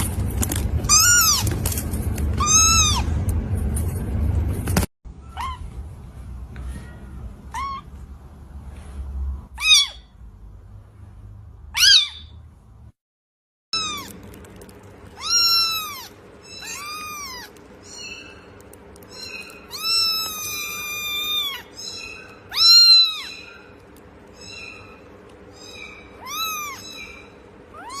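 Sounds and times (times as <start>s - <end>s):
cat meowing: 6.8s - 7.8s, 15.2s - 18.1s, 19.2s - 23.6s, 25.6s - 28.0s.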